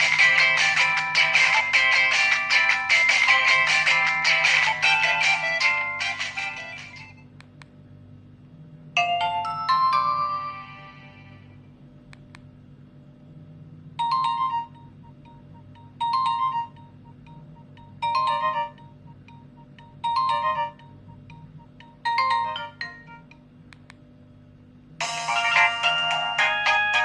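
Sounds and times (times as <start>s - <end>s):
phone ringtone: 0.0s - 7.2s, 9.0s - 11.5s, 14.0s - 23.3s, 25.0s - 27.0s.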